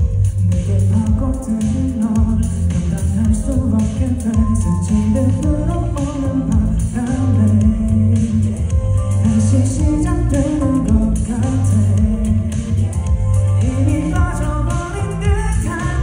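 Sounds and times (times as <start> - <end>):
bass and guitar: 0.0 - 16.0
man singing over backing track: 0.0 - 16.0.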